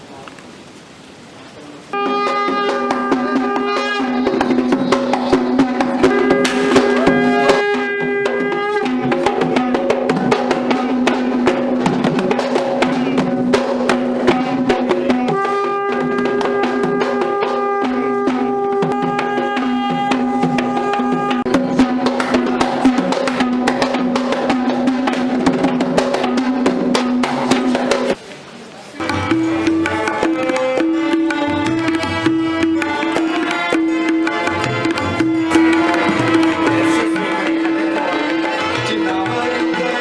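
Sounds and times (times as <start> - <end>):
long held pitched notes: 1.9 - 11.8, 14.1 - 24.0
fast dense drumming: 2.7 - 28.2, 29.0 - 40.0.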